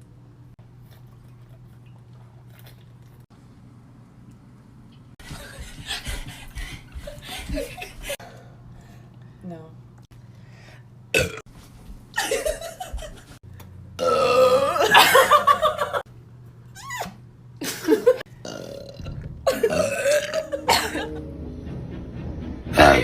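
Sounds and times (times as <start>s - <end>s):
person burping: 11.1s - 11.4s, 14.0s - 15.0s, 18.4s - 21.1s.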